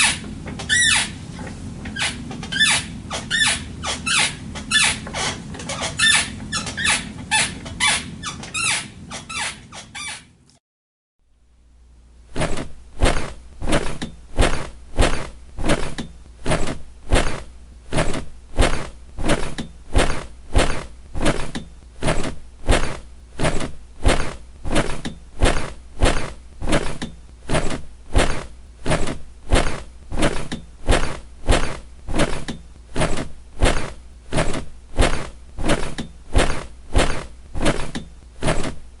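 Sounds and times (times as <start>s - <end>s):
bed squeaking rhythmically: 0.0s - 10.6s, 12.4s - 39.0s
low steady hum: 0.0s - 10.6s, 11.2s - 39.0s.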